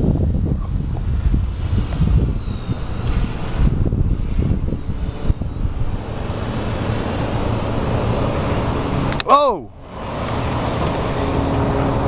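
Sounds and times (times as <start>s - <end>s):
wind buffeting microphone: 0.0s - 9.2s
rc helicopter motor whine: 0.0s - 12.0s.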